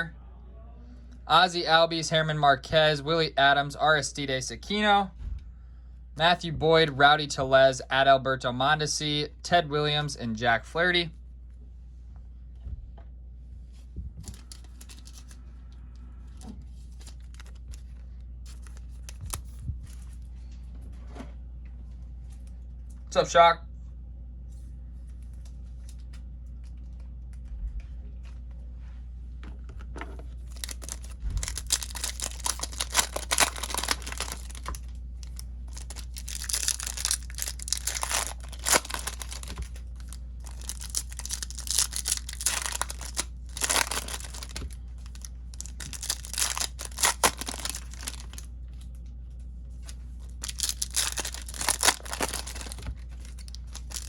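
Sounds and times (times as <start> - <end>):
steady low hum: 0.0 - 54.0
card pack wrappers tearing: 14.3 - 15.4, 16.8 - 19.6, 30.5 - 48.4, 50.3 - 54.0.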